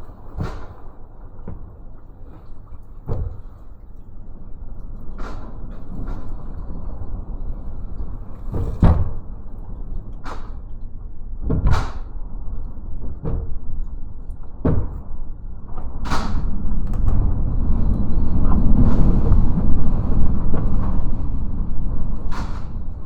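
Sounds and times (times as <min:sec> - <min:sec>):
strong wind roaring: 0:15.0 - 0:23.0.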